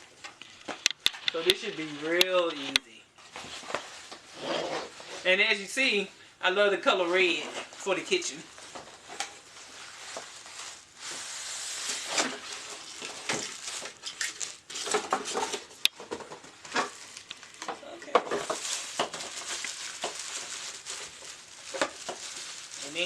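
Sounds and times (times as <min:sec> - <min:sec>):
packaging crinkling and rustling: 0:00.0 - 0:05.6, 0:06.9 - 0:23.0.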